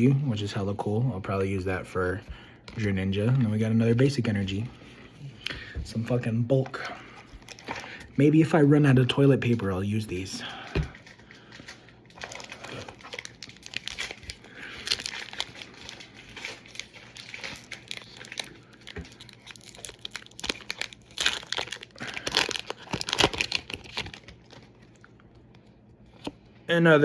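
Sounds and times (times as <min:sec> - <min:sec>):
foil wrapper crinkling and tearing: 0:11.0 - 0:25.7.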